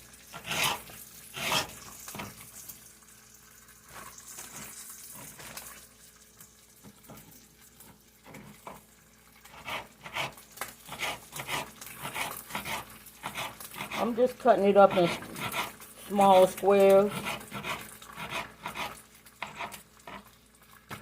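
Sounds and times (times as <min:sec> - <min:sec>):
bacon frying: 0:00.0 - 0:21.0
knife cutting on cutting board: 0:00.4 - 0:02.2, 0:09.5 - 0:14.1, 0:14.9 - 0:15.8, 0:17.0 - 0:20.2.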